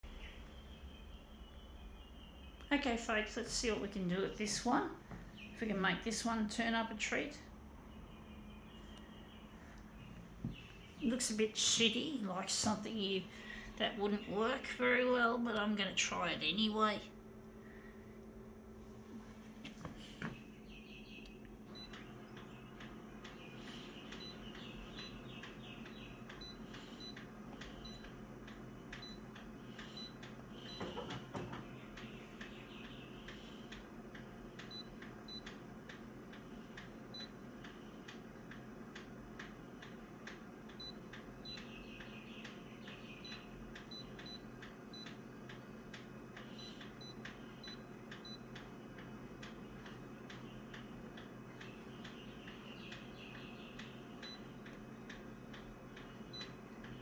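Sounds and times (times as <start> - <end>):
faint regular ticking: 21.2 - 31.0, 31.9 - 57.0.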